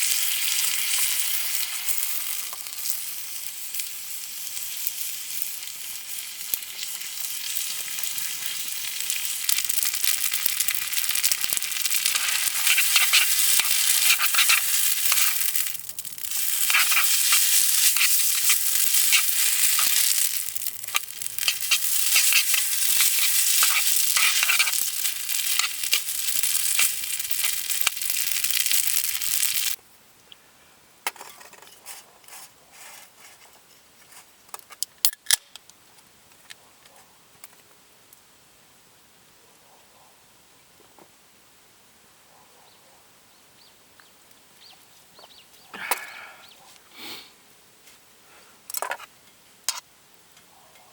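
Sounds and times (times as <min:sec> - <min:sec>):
food sizzling in a hot pan: 0:00.0 - 0:29.8.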